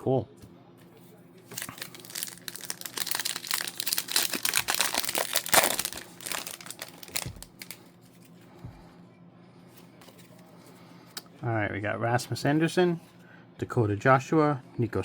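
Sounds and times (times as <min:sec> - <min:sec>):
card pack wrapper tearing and crinkling: 0:01.5 - 0:08.0.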